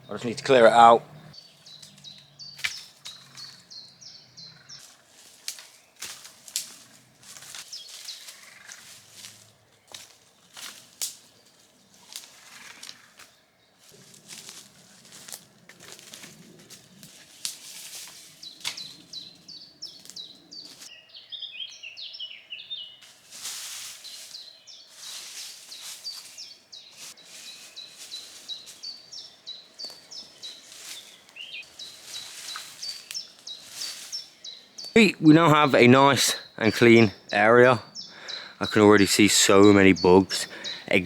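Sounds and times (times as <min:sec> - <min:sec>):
birds chirping: 0:00.0 - 0:06.0, 0:07.7 - 0:08.9, 0:18.4 - 0:23.1, 0:24.0 - 0:41.0
rustling leaf litter and twigs: 0:01.4 - 0:03.7, 0:04.7 - 0:20.9, 0:22.7 - 0:34.9.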